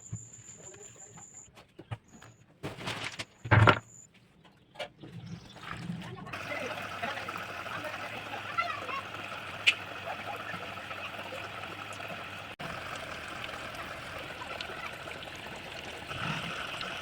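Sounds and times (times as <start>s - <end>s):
water trickling in fountain: 5.4s - 17.0s.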